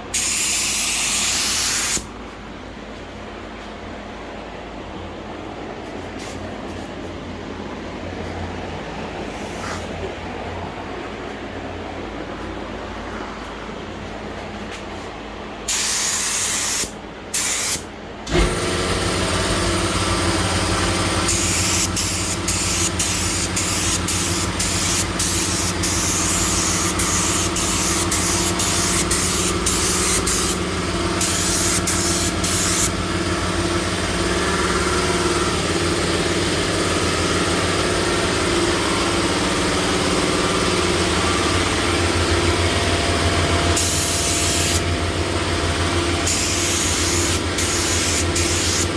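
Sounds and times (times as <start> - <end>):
air compressor motor hum: 0.0 - 48.9
spray gun hissing: 0.1 - 2.1, 15.7 - 17.8, 21.3 - 33.0, 43.8 - 44.8, 46.2 - 48.9.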